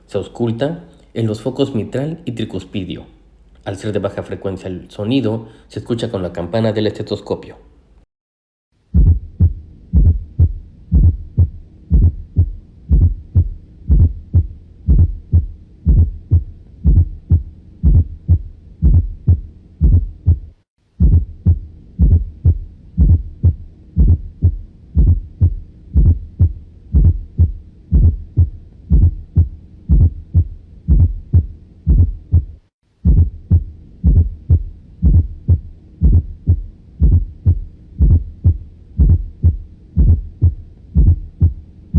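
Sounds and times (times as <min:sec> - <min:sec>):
heartbeat thuds through stethoscope: 0:08.9 - 0:41.6.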